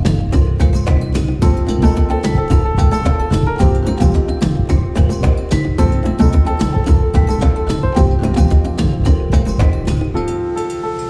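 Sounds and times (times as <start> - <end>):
percussive beat: 0.0 - 11.0.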